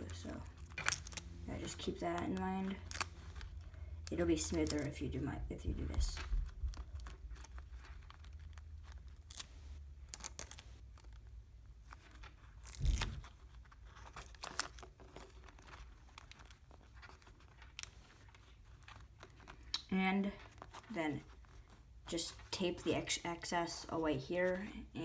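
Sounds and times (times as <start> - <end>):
paper crinkling: 0.0 - 24.9
tape being pulled and torn: 0.5 - 3.8, 6.6 - 11.2, 12.0 - 19.9.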